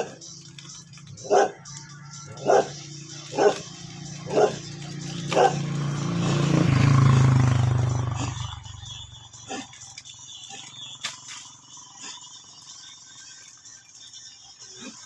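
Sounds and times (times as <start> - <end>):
dog barking: 1.2 - 5.8.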